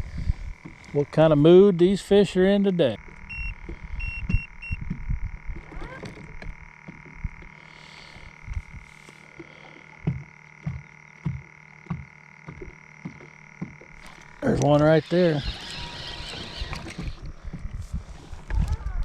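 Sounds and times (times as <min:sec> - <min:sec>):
soft low thumps: 0:00.0 - 0:01.3, 0:03.0 - 0:07.6, 0:08.2 - 0:14.4, 0:17.0 - 0:19.0
high-pitched whine: 0:00.0 - 0:19.0
short electronic beeps: 0:03.3 - 0:04.8.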